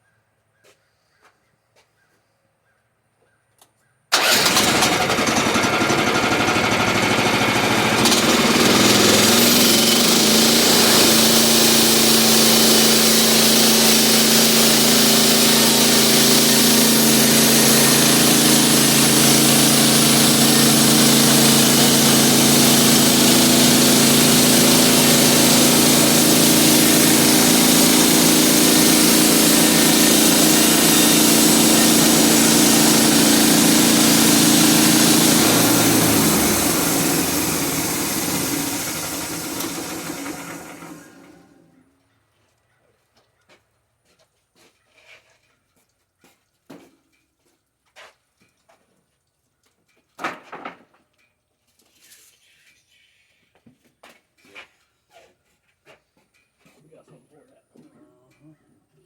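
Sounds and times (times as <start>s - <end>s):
sawmill engine running: 4.1s - 41.8s.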